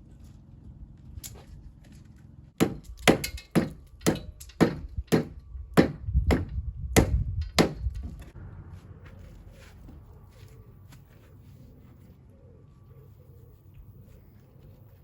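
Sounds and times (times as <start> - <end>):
hammer strikes: 2.6 - 8.0.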